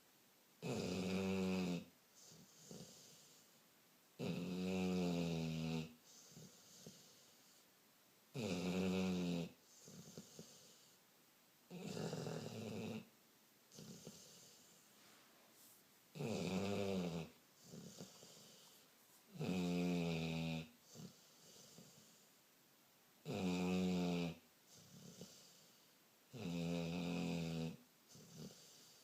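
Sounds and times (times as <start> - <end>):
loud snoring: 0.6 - 3.4, 4.2 - 7.3, 8.3 - 10.9, 11.7 - 13.1, 13.7 - 14.7, 16.1 - 22.2, 23.2 - 25.7, 26.3 - 29.0
soft breathing: 2.1 - 3.6, 6.0 - 7.8, 13.7 - 16.0, 17.2 - 19.4, 20.7 - 22.4, 24.6 - 26.0, 28.0 - 29.0.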